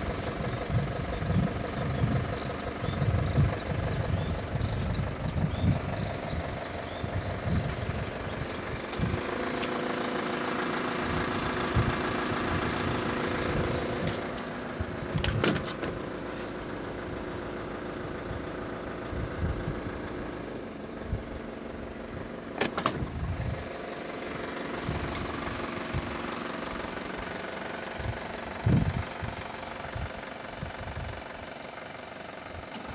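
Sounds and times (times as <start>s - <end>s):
diesel engine running: 0.0s - 32.9s.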